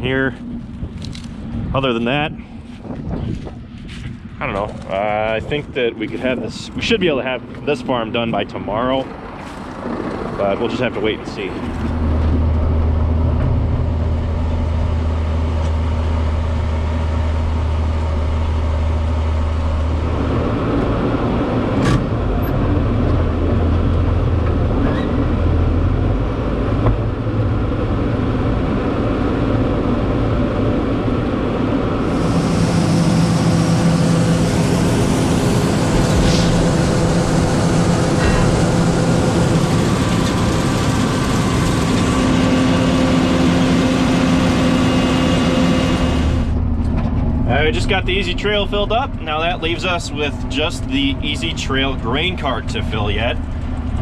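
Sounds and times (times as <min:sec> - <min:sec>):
diesel engine running: 0:00.0 - 0:54.0
high-toned hiss: 0:32.0 - 0:41.3.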